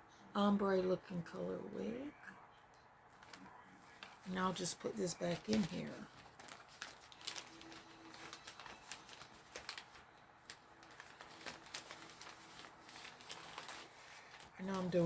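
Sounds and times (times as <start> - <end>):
plastic bag crinkling: 3.1 - 15.0.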